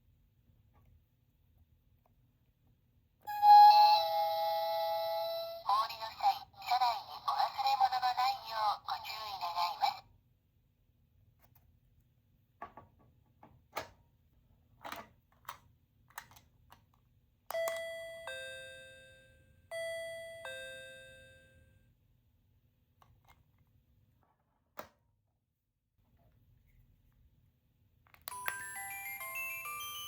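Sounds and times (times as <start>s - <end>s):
plastic clicks: 14.8s - 17.0s
two-tone ding-dong chime: 17.5s - 21.7s, 28.3s - 30.0s.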